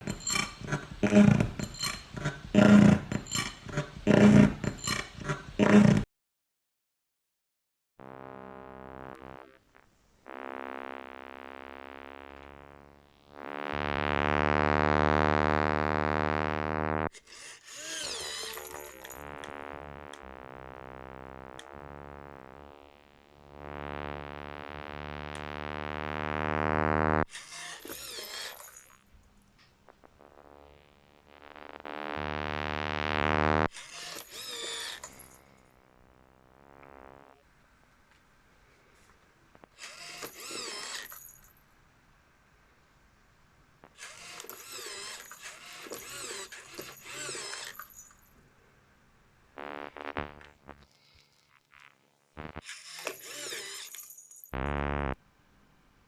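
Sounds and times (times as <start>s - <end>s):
steady droning notes: 19.7s - 27.2s.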